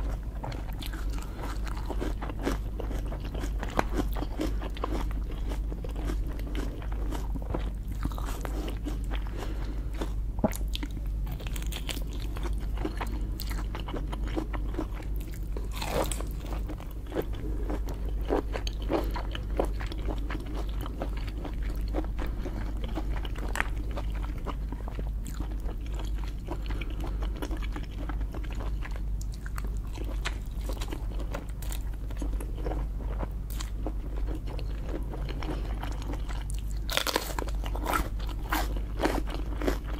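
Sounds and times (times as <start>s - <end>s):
crunching and chewing: 0.0s - 39.9s.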